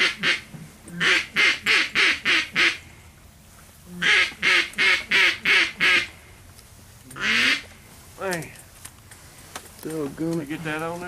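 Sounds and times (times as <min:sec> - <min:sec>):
duck call quacks: 0:00.0 - 0:02.8, 0:03.9 - 0:06.1, 0:07.2 - 0:07.6.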